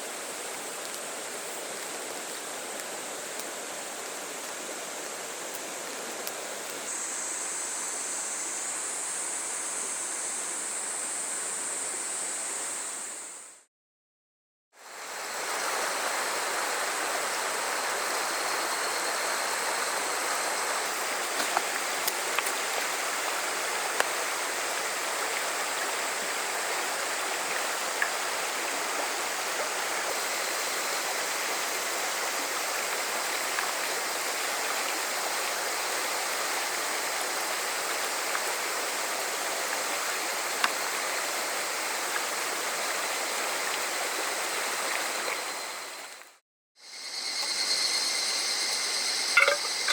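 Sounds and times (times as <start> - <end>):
river water rushing: 14.9 - 46.1.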